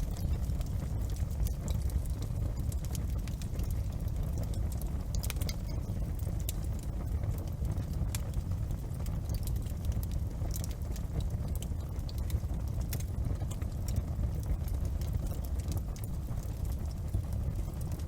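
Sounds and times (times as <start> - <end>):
wood fire crackling: 0.0 - 18.0
low rumble: 16.0 - 17.4.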